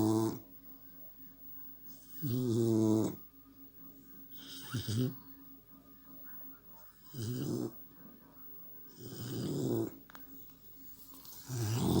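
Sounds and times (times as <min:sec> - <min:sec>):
puppy snoring: 0:00.0 - 0:00.4, 0:02.2 - 0:03.3, 0:04.3 - 0:05.2, 0:07.1 - 0:07.8, 0:08.9 - 0:10.0, 0:11.2 - 0:12.0.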